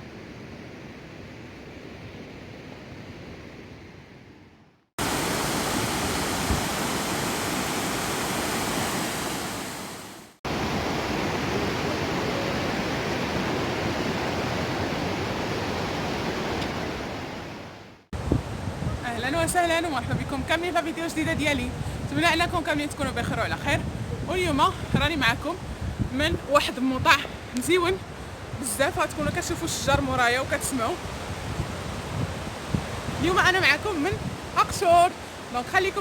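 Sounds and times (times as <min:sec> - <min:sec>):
rushing water: 0:05.0 - 0:36.0.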